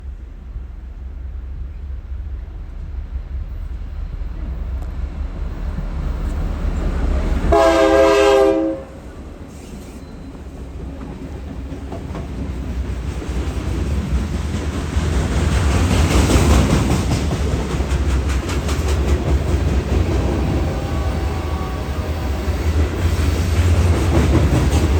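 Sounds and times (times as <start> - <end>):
locomotive engines rumbling: 0.0 - 24.9
locomotive air horn chord: 7.4 - 9.2, 20.4 - 22.8
wheels clattering on rail joints: 9.5 - 21.7, 22.5 - 24.9.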